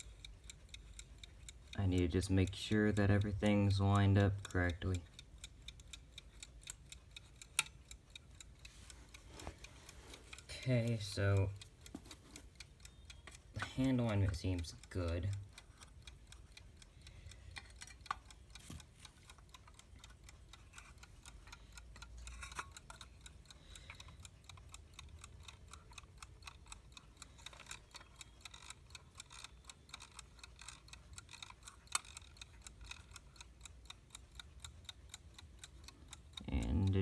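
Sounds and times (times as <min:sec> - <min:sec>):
alarm clock ticking: 0:00.0 - 0:37.0.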